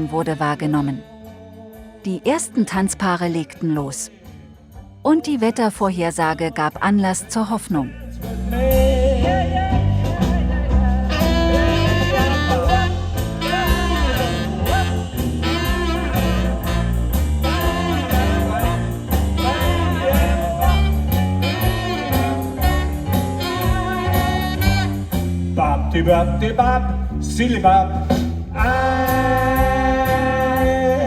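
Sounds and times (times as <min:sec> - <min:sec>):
instrumental jazz band music: 0:06.6 - 0:31.0.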